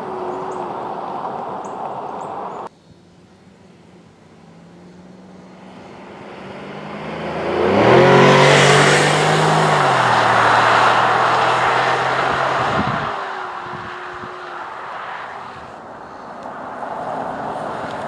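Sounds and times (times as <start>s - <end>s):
car engine accelerating: 4.2s - 15.8s.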